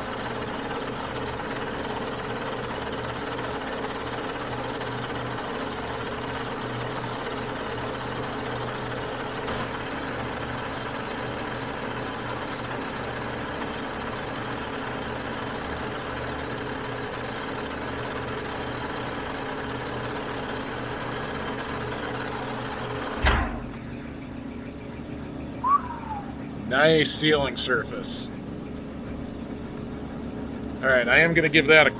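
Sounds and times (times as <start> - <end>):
metal lathe humming: 0.0 - 23.2
sharp clunk: 23.2 - 23.8.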